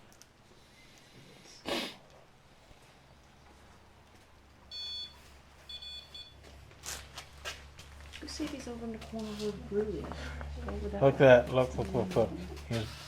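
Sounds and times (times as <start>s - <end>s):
electronic device beeping: 4.7s - 6.4s.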